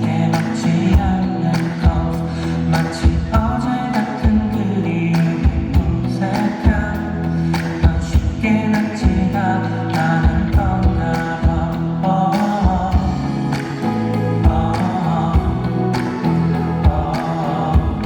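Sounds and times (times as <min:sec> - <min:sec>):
pop song singing: 0:00.0 - 0:18.0
sustained bass: 0:00.0 - 0:18.0
steady drum beat: 0:02.8 - 0:04.7, 0:05.3 - 0:09.4, 0:10.2 - 0:18.0.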